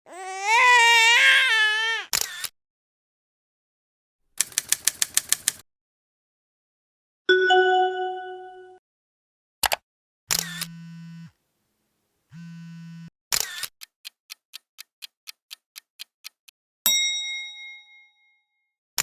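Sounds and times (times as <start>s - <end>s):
fast run of clicks: 4.4s - 5.6s
bell-like chime: 7.3s - 8.8s, 16.9s - 18.5s.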